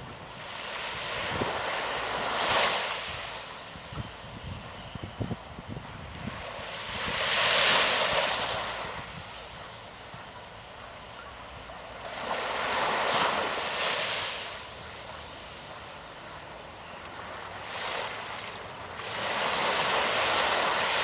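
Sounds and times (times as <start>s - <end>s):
ocean waves breaking on shore: 0.0s - 21.0s.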